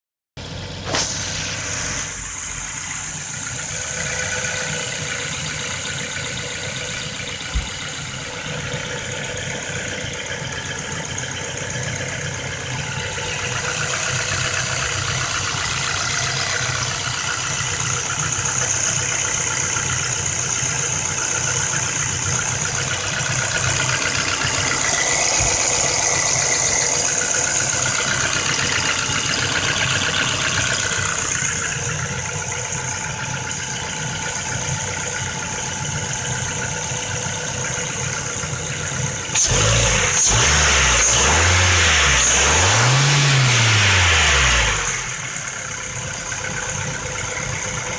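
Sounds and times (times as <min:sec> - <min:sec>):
car engine idling: 0:00.4 - 0:47.9
rhythmic engine knock: 0:02.3 - 0:40.9, 0:43.0 - 0:47.9.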